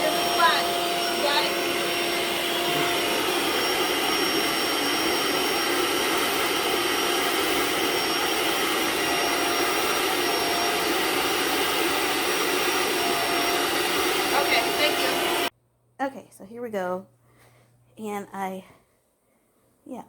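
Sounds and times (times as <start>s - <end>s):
carpet cleaner motor whining: 0.0s - 15.5s.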